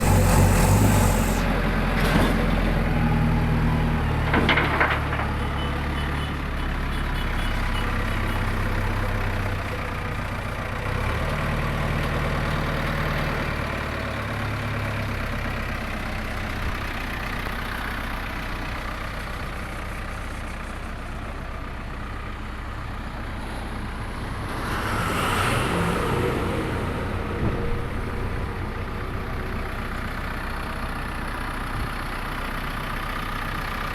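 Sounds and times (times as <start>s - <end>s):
rush of noise: 0.0s - 1.5s
diesel engine idling: 0.0s - 3.0s, 5.8s - 24.5s, 27.9s - 33.9s.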